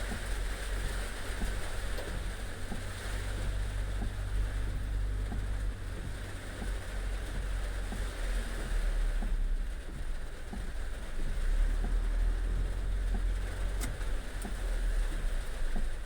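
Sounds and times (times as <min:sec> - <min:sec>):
heavy rain: 0:00.0 - 0:16.0
wind rumble on microphone: 0:00.0 - 0:16.0.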